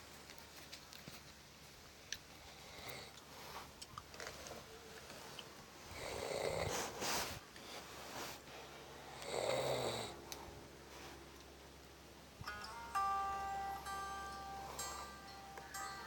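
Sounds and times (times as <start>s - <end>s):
quiet breathing: 2.2s - 11.5s, 14.4s - 16.0s
loud snore: 6.0s - 7.0s, 9.1s - 10.2s.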